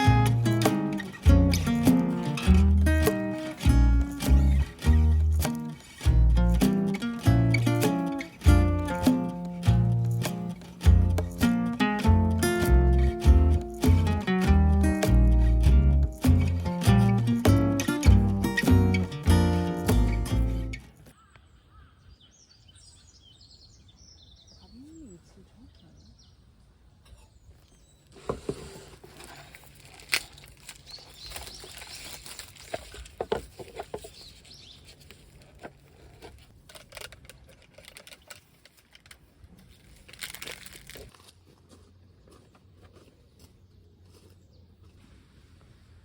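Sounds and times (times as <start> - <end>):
crackling and rustling: 0.0 - 19.9, 27.6 - 45.8
bird chirps: 21.0 - 26.5.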